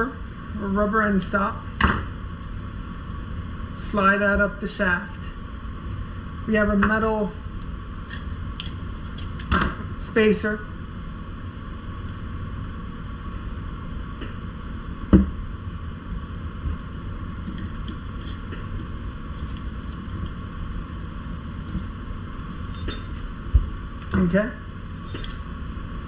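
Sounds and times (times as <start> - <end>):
steady low hum: 0.0 - 26.0
metal parts clicking: 25.0 - 25.4.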